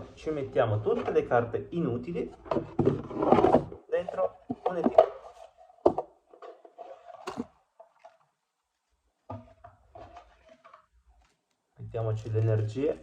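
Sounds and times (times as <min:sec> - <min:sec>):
cards rustling and tapping: 0:02.5 - 0:08.2, 0:09.2 - 0:13.0.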